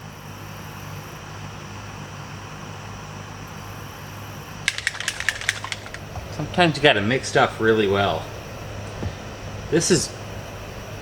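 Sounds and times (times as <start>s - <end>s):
stir stick tapping cup: 4.7s - 6.1s.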